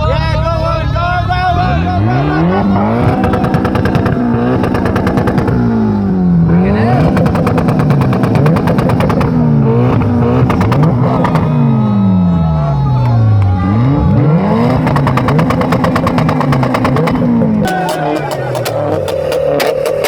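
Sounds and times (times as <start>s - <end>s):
car engine revving with crackle: 2.0s - 11.6s, 13.6s - 20.0s.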